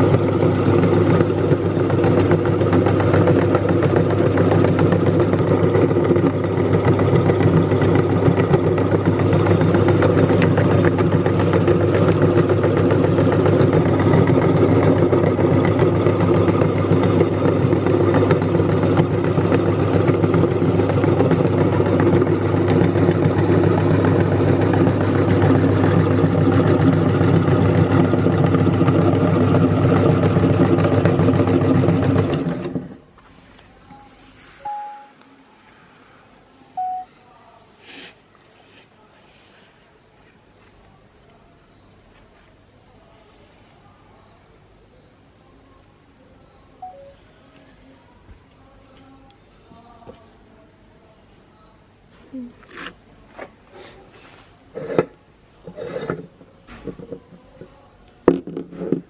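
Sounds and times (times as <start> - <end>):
meat grinder motor humming: 0.0 - 33.0.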